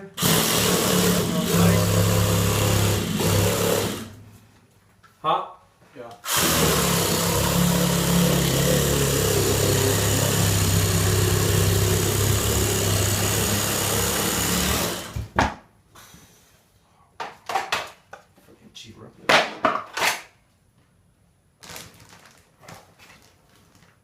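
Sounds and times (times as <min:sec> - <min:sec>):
electric power tool running: 0:00.1 - 0:04.2, 0:06.3 - 0:15.2.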